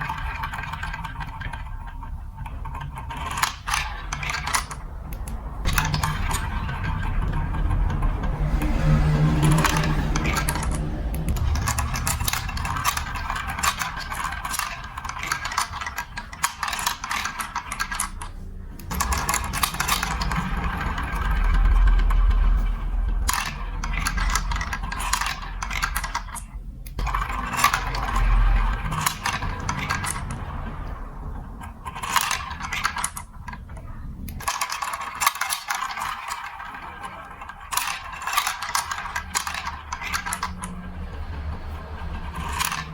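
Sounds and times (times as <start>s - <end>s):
marbles clicking on a track: 0.0s - 42.9s
low rolling rumble: 3.9s - 17.1s, 18.2s - 34.6s.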